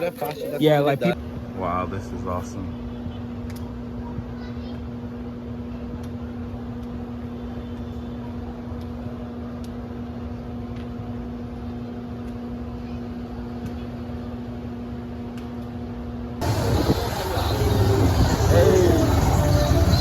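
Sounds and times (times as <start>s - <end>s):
steady mechanical hum: 0.0s - 20.0s.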